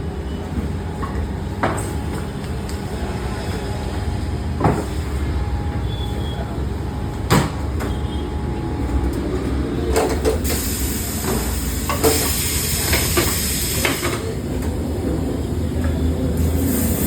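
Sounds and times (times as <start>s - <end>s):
compressed air hissing: 10.4s - 14.3s, 16.4s - 17.0s.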